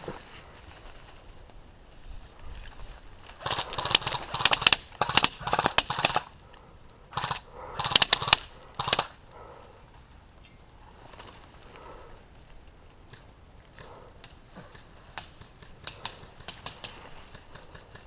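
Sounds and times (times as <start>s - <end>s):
airsoft rifle full-auto bursts: 3.4s - 6.4s, 7.1s - 9.2s.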